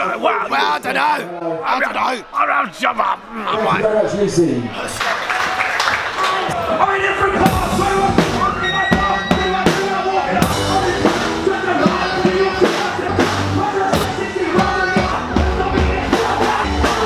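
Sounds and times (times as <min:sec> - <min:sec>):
rock music: 0:06.6 - 0:17.0
drum kit beat: 0:07.3 - 0:17.0.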